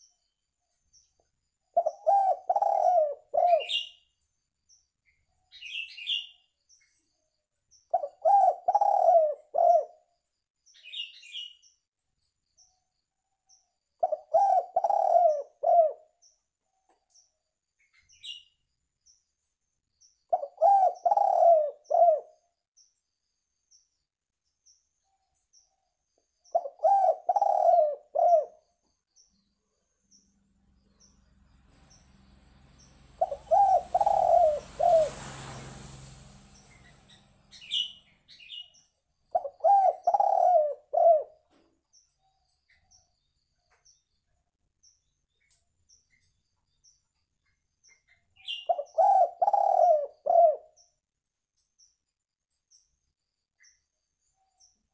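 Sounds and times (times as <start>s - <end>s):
faint high bird chirps: 0.0s - 54.9s
dove cooing: 1.8s - 3.9s, 7.9s - 10.0s, 14.0s - 16.1s, 20.3s - 22.4s, 26.5s - 28.6s, 32.8s - 36.1s, 39.3s - 41.6s, 48.4s - 50.8s
rushing noise: 31.4s - 38.3s.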